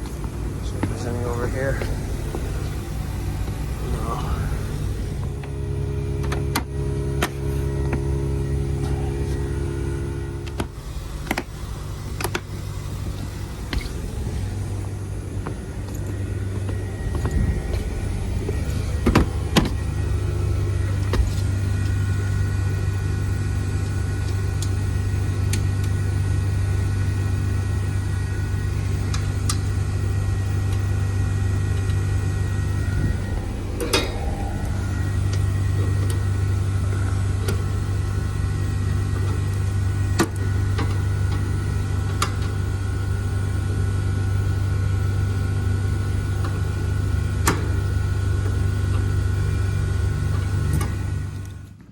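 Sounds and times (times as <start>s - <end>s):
faint steady whines: 0.0s - 51.9s
heat pump low hum: 0.0s - 51.9s.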